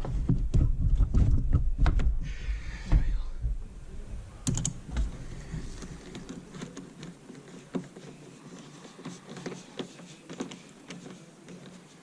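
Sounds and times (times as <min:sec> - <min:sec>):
sharp knocks: 0:00.0 - 0:03.7.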